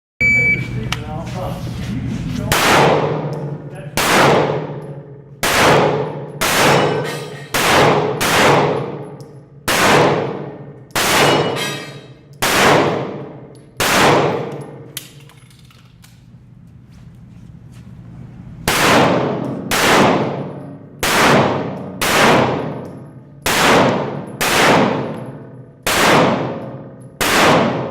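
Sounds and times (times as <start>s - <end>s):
pistol shots echoing: 2.5s - 3.4s, 4.0s - 15.0s, 18.7s - 27.9s.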